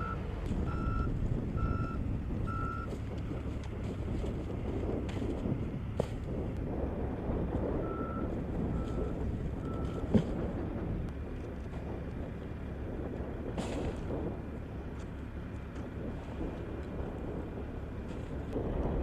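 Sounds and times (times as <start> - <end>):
short beeps: 0.0 - 2.9
low rumble: 0.0 - 19.0.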